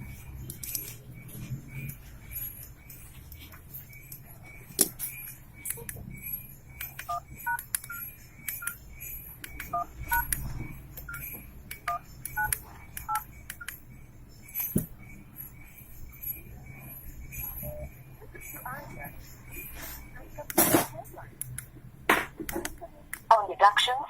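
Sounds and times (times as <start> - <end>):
two-tone keypad beeps: 6.8 - 8.8, 9.4 - 13.7.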